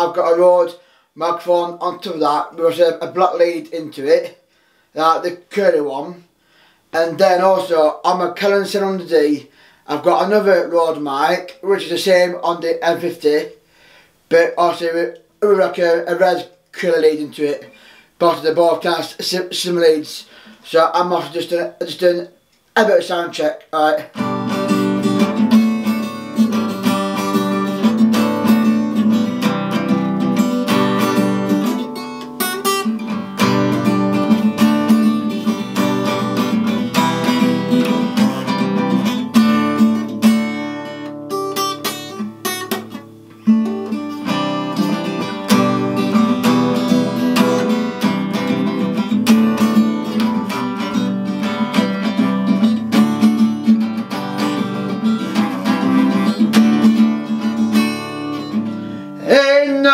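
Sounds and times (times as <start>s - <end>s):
acoustic guitar strumming: 24.1s - 59.9s.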